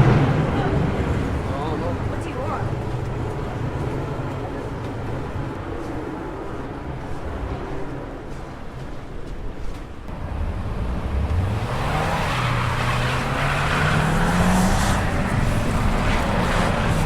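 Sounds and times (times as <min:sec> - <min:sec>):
vehicle engine accelerating: 0:10.1 - 0:17.0.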